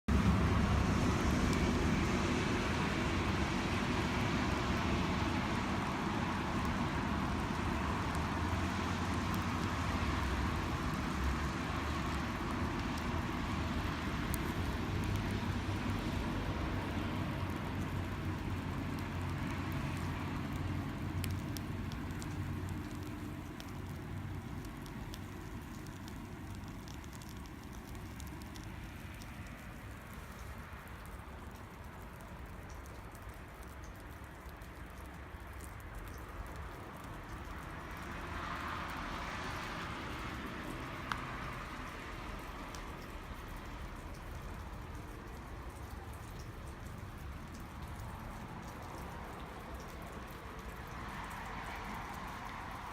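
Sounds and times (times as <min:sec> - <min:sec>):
crackles and pops of burning wood: 0:00.1 - 0:52.9
rushing of campfire flames: 0:00.1 - 0:52.9.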